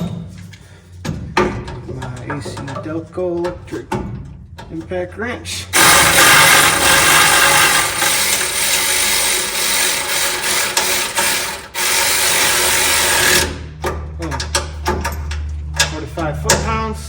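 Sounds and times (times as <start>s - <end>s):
cordless impact wrench running: 5.7s - 13.6s.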